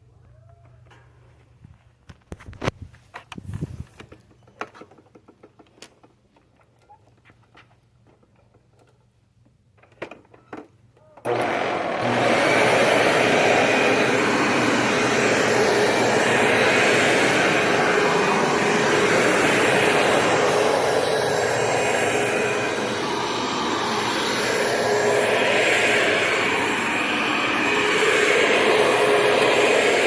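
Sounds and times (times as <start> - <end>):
vacuum cleaner running: 11.2 - 30.0.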